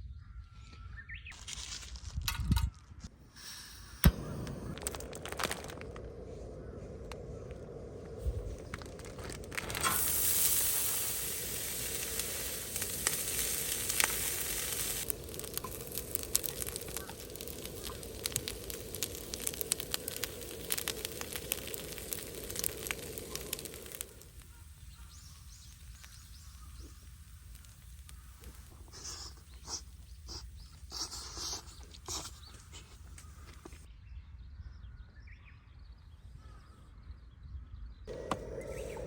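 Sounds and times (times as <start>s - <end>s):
food sizzling on a grill: 7.4s - 33.7s.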